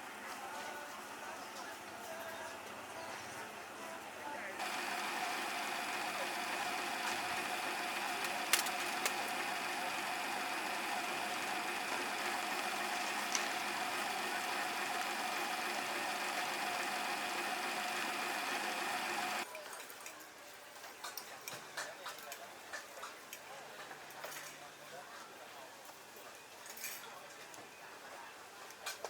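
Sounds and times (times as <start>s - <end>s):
sharp clicks: 4.6s - 19.4s
small motor running: 4.6s - 19.5s.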